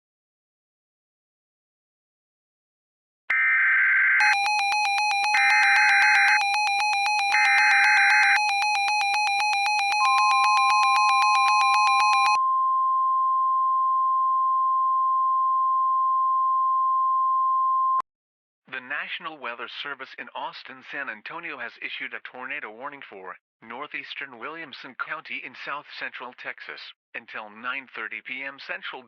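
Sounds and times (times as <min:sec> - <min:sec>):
steady warning alarm tone: 0:04.2 - 0:12.4.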